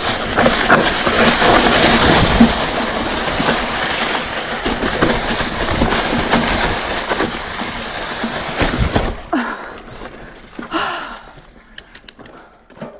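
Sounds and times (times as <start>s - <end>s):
wind noise: 0.0s - 9.3s
bike rattling over rough trail: 0.0s - 12.9s.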